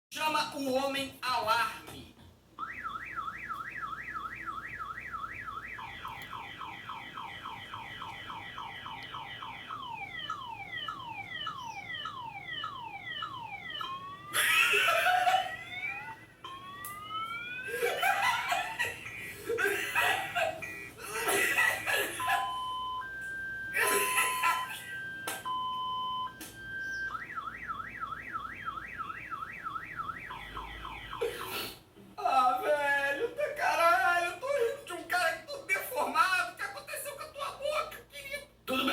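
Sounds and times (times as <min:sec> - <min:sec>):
man imitating car alarm: 0:02.6 - 0:31.6
bursts of laughter: 0:14.3 - 0:15.9, 0:17.6 - 0:22.6.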